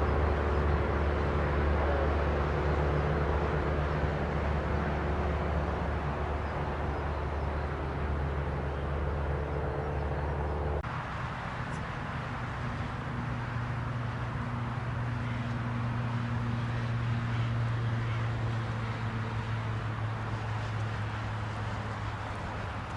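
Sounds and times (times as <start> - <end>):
lower-pitched engine drone: 0.0 - 22.9
propeller aircraft engine drone: 0.0 - 22.9.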